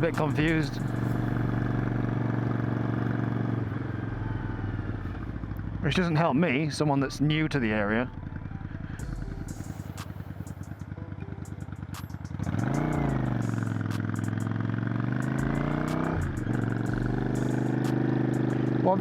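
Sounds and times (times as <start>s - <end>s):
motorcycle engine revving: 0.0s - 6.3s, 7.1s - 19.0s.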